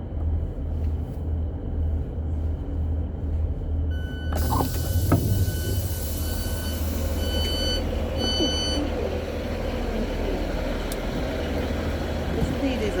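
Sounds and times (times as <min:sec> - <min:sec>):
diesel train low rumble: 0:00.0 - 0:13.0
train door warning beeps: 0:03.9 - 0:09.0.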